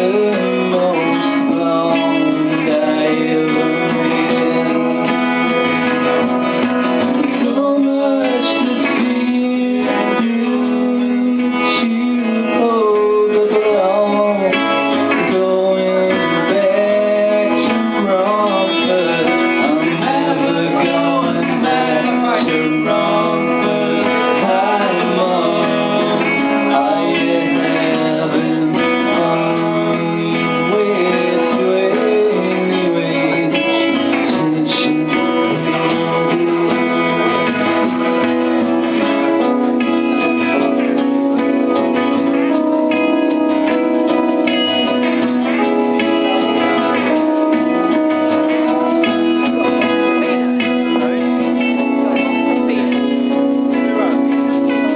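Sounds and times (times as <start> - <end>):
strummed guitar: 0.0 - 54.9.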